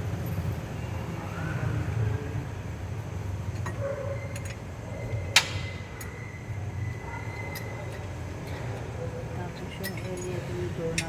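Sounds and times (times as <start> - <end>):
sharp metallic clicks and clinks: 3.5 - 6.4, 9.6 - 11.0.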